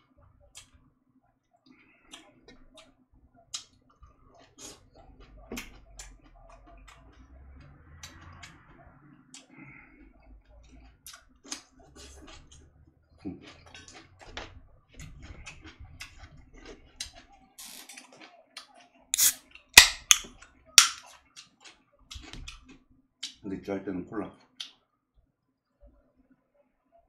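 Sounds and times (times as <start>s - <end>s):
utensils clicking against dishes: 19.2s - 21.0s
loud sharp snaps: 19.2s - 21.1s.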